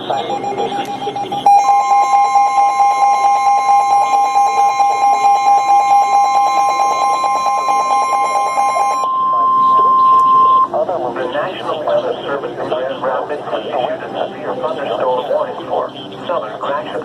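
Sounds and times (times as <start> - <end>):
rapidly pulsing alarm beep: 0.0 - 10.8
steady warning tone: 0.0 - 12.9.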